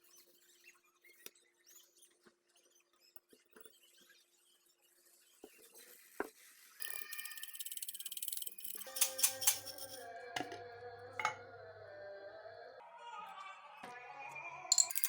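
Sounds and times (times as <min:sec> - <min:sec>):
rattly background music: 0:06.9 - 0:10.6, 0:14.7 - 0:15.0.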